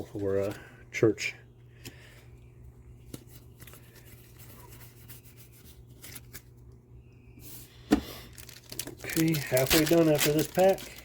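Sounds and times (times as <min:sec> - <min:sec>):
trading cards rustling and clicking: 0:03.0 - 0:05.1, 0:05.8 - 0:06.6, 0:08.2 - 0:11.0.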